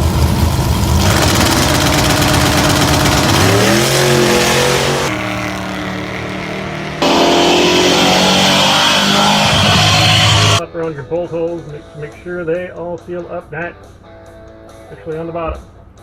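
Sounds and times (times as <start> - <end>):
car engine revving: 0.0 - 10.6.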